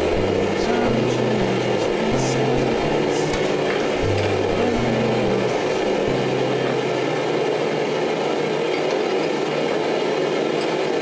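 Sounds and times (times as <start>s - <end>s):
workshop machinery roaring: 0.0s - 11.0s.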